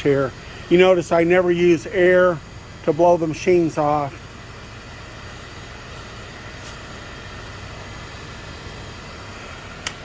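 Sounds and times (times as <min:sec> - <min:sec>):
machine humming: 0:00.0 - 0:10.0.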